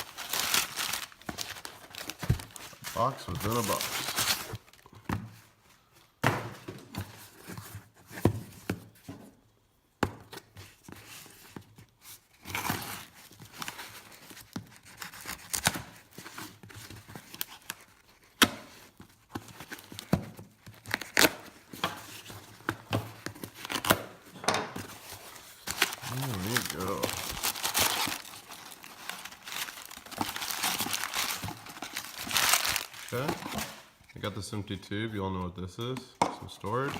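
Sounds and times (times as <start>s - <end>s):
packing material crinkling: 0.0s - 4.9s, 12.4s - 34.0s
tape and cardboard tearing: 12.4s - 24.3s, 24.9s - 33.8s.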